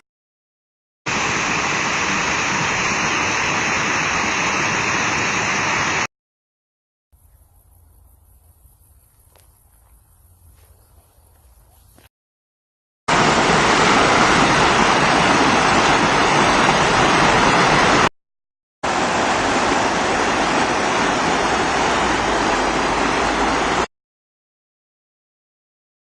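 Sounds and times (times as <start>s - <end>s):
stream water rushing: 1.1s - 6.1s, 13.1s - 18.1s, 18.8s - 23.9s.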